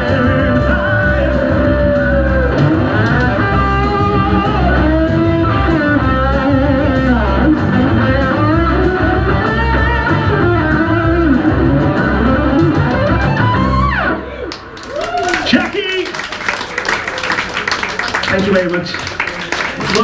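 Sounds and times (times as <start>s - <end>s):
bass and drums: 0.0s - 14.2s
electric guitar lead line: 0.0s - 14.3s.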